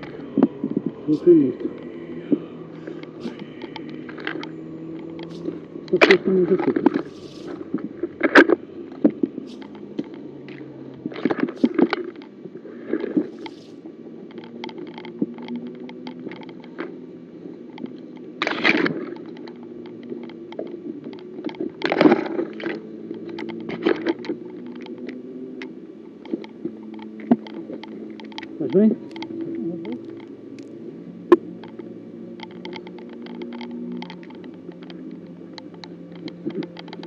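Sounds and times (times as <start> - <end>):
vehicle engine running: 0.0 - 37.0.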